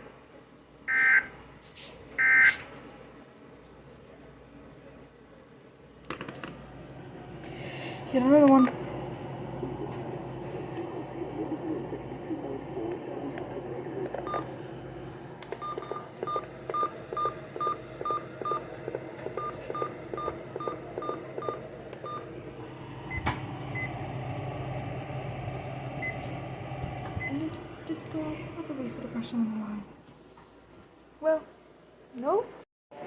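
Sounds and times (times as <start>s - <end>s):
low steady hum: 5.8s - 30.4s.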